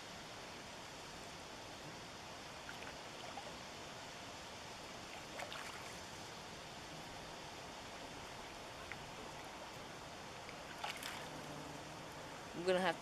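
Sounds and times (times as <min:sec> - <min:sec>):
river water flowing: 0:00.1 - 0:11.4
small water splashes: 0:05.1 - 0:06.0, 0:10.4 - 0:11.3.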